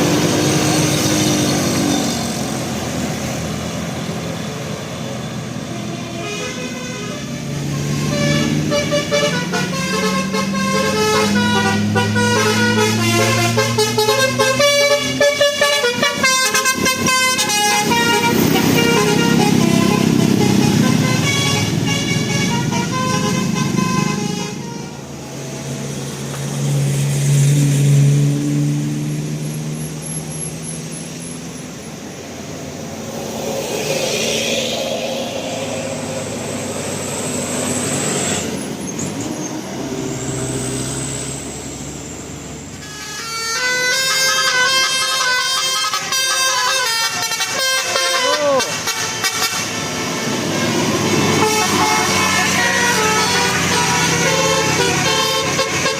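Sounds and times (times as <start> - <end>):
heavy vehicle engines: 0.0 - 55.9
road noise: 0.0 - 55.9
bus horn multi-note tune: 5.8 - 25.2, 42.8 - 55.9.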